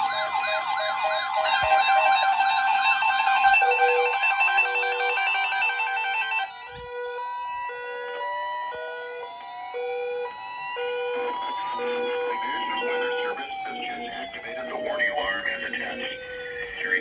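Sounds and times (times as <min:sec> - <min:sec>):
repeated beeps: 0:00.0 - 0:06.2
rising siren-like tone: 0:00.0 - 0:17.0
steady warning alarm tone: 0:00.0 - 0:17.0
warbling siren tones: 0:00.0 - 0:17.0.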